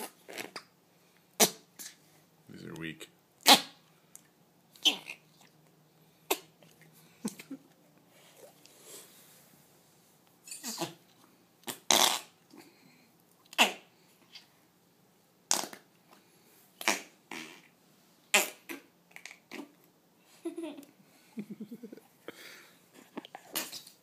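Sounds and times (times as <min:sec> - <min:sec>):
person making fart noises: 0:00.0 - 0:00.7, 0:01.4 - 0:02.0, 0:03.4 - 0:03.8, 0:04.7 - 0:05.2, 0:10.5 - 0:11.0, 0:11.6 - 0:12.4, 0:13.5 - 0:13.9, 0:15.5 - 0:15.9, 0:16.8 - 0:19.8, 0:23.4 - 0:24.0.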